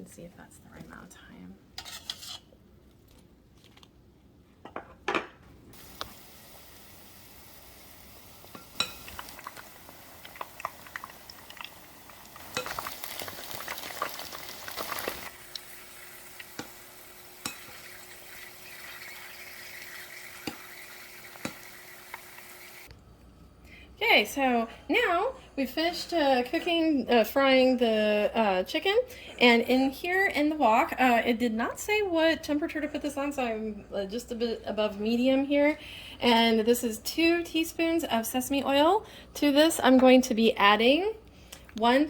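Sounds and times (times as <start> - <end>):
faint steady hum: 5.4 - 42.0
chicken frying in hot oil: 5.8 - 22.9.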